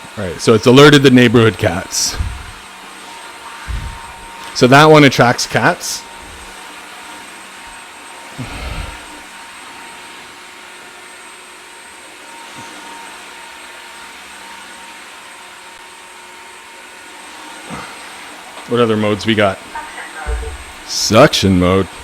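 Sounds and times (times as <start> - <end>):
vacuum cleaner running: 0.0 - 22.0
brief low thud: 2.1 - 2.6, 3.6 - 4.4.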